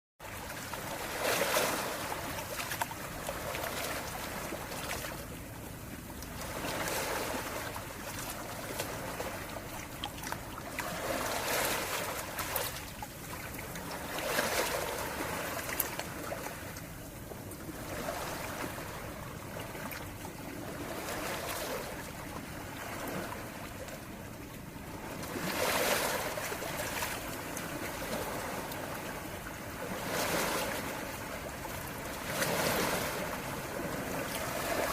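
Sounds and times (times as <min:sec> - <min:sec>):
sea waves washing ashore: 0:00.2 - 0:34.9.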